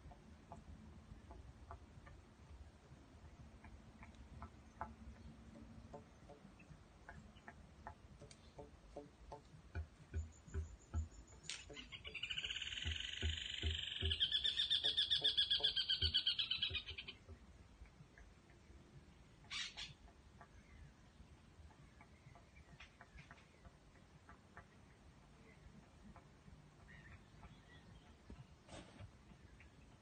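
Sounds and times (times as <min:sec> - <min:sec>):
faint clicks: 0:02.8 - 0:15.0.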